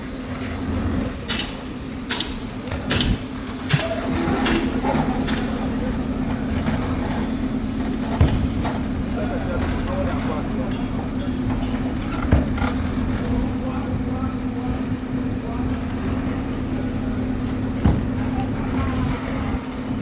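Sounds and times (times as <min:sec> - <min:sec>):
digger engine running: 0:00.0 - 0:20.0
dull thump: 0:08.2 - 0:08.9, 0:17.8 - 0:18.6.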